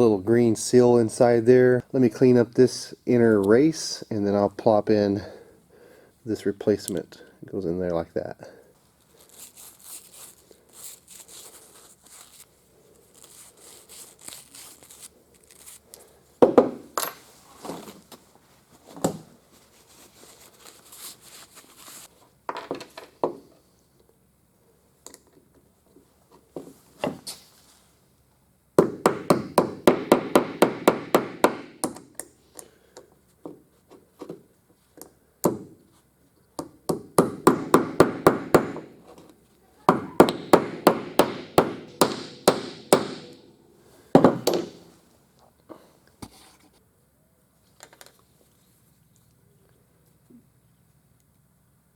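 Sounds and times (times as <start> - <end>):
parts knocking and clunking: 16.4 - 17.8, 44.1 - 44.9.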